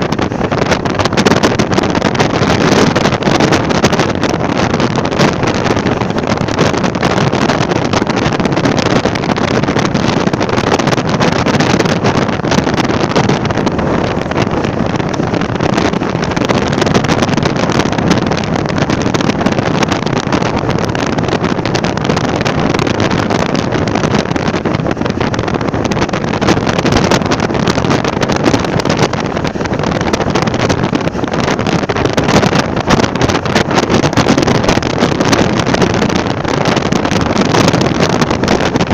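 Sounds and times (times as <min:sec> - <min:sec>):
loud rush of wind: 0:00.0 - 0:38.9.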